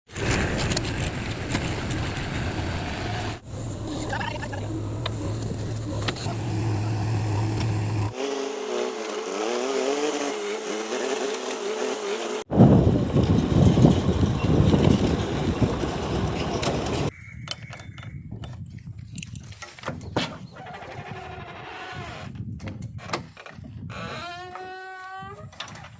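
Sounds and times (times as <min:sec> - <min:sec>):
heavy machinery diesel engine: 0:01.1 - 0:09.6, 0:10.5 - 0:17.1.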